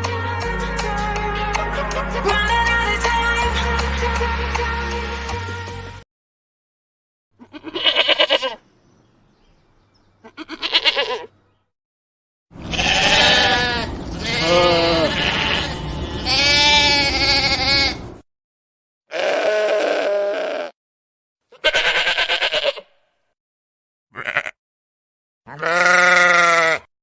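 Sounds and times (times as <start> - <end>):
music: 0.0 - 6.0
lamb bleating: 7.4 - 8.6, 10.2 - 11.3, 12.6 - 18.0, 19.1 - 20.8, 21.5 - 23.1, 24.1 - 24.6, 25.5 - 26.9.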